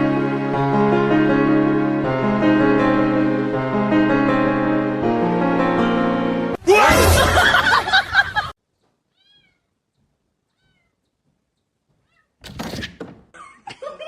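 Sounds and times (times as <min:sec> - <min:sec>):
cat meowing: 0:09.1 - 0:09.8, 0:10.5 - 0:11.1, 0:12.0 - 0:12.4.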